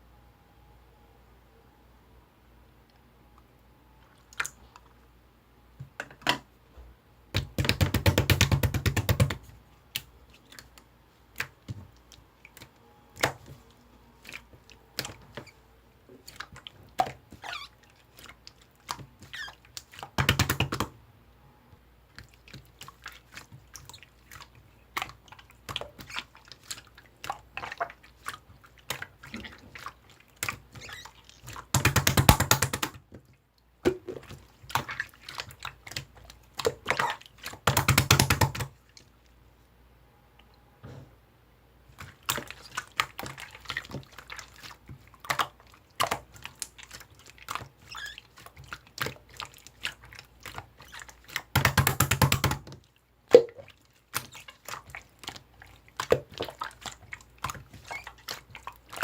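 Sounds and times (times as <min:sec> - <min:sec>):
rapid crackling pops of slime: 0:07.4 - 0:11.9, 0:18.8 - 0:21.0, 0:30.4 - 0:33.2, 0:33.8 - 0:38.8, 0:42.0 - 0:59.0.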